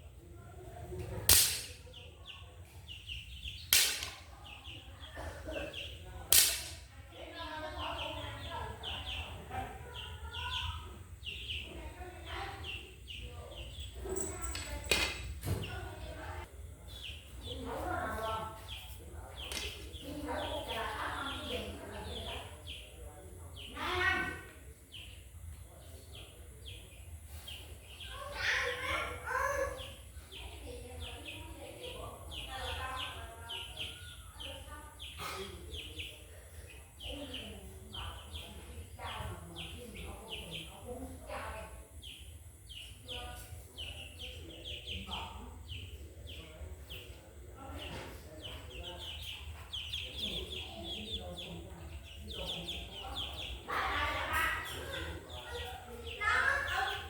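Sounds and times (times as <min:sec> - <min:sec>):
chick peeping: 0:00.0 - 0:14.2, 0:15.6 - 0:57.0
loud sharp cracks: 0:01.3 - 0:02.0, 0:03.6 - 0:04.3, 0:06.3 - 0:06.9.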